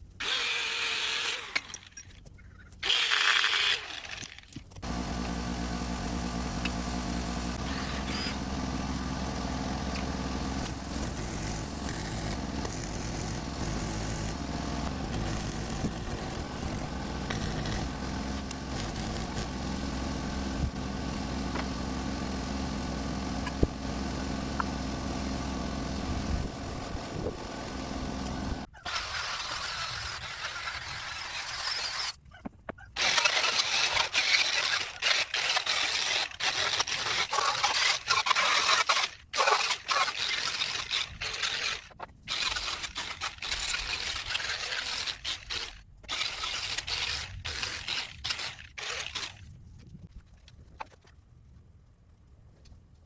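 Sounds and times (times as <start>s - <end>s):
motor humming: 4.8s - 29.4s.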